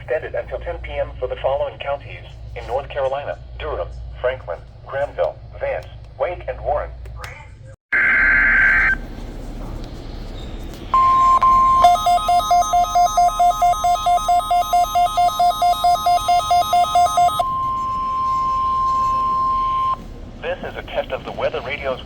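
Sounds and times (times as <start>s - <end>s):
rapid electronic beeping: 11.0s - 20.0s
steady warning alarm tone: 11.0s - 20.4s.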